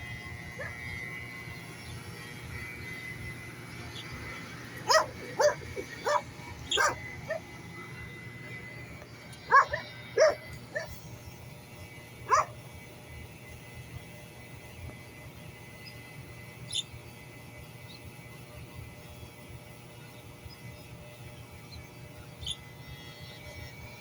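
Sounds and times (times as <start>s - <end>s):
dog barking: 4.9s - 7.4s, 9.5s - 10.9s, 12.3s - 12.6s.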